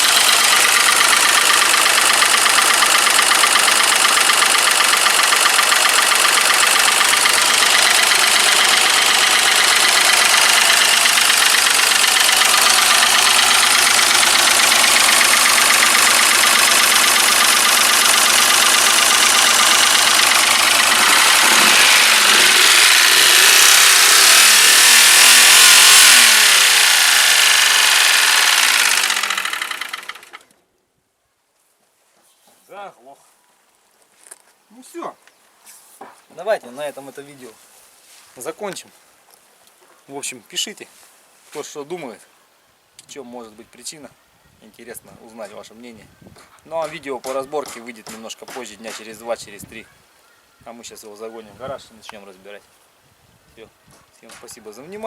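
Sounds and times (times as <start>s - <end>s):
car engine idling with knock: 0.0s - 30.4s
man talking: 32.7s - 33.2s, 34.7s - 35.2s, 43.1s - 49.9s, 50.6s - 52.7s, 53.6s - 55.0s.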